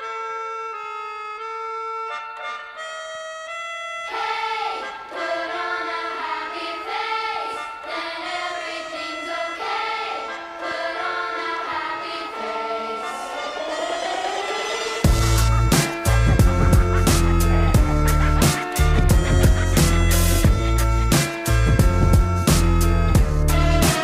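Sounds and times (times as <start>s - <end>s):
steady held music notes: 0.0s - 24.0s
high voices singing: 4.1s - 21.6s, 23.2s - 24.0s.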